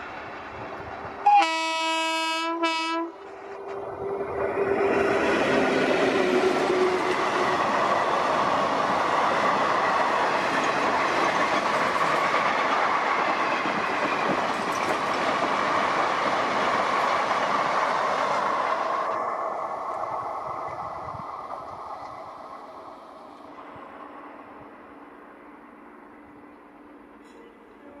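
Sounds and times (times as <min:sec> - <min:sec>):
train wheels rumbling on rails: 0:02.6 - 0:24.0.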